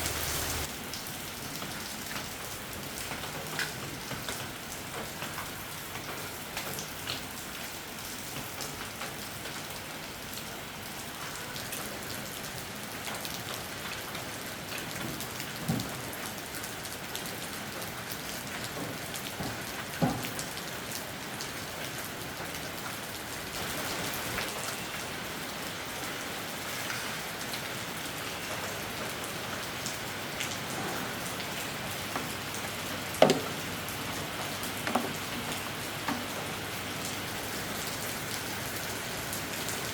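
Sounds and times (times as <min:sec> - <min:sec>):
loud rain taps: 0:00.0 - 0:01.0, 0:30.4 - 0:38.2
steady rain falling: 0:00.0 - 0:39.9.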